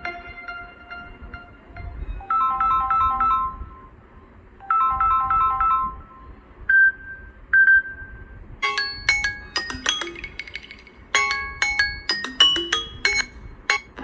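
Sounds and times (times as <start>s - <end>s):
chiming ringtone: 0.0s - 4.0s, 4.6s - 8.0s, 8.6s - 13.9s
electronic ringtone melody: 0.0s - 4.0s, 4.6s - 14.0s.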